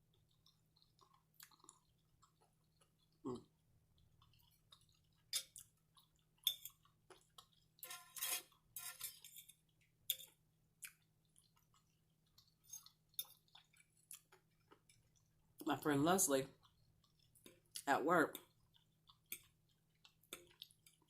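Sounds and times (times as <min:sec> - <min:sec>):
wet chewing mouth clicks: 0:00.2 - 0:07.8, 0:10.8 - 0:15.4, 0:16.6 - 0:21.0.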